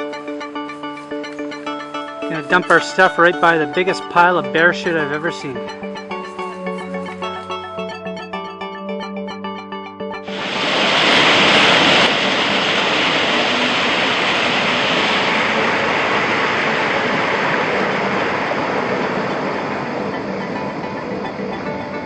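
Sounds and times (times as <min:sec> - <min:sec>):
soft music with mallet notes: 0:00.0 - 0:10.9, 0:16.7 - 0:22.0
stream water rushing: 0:10.3 - 0:21.9.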